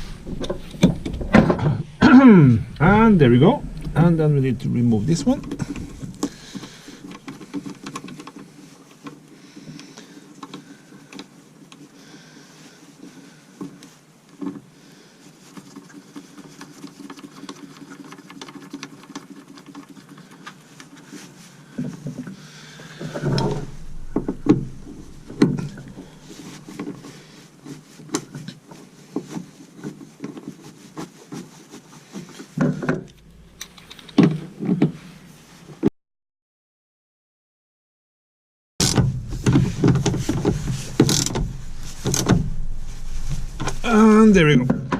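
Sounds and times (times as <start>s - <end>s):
metal knocks and clunks: 0.0s - 2.0s, 2.6s - 7.3s, 23.0s - 26.8s, 38.8s - 44.9s.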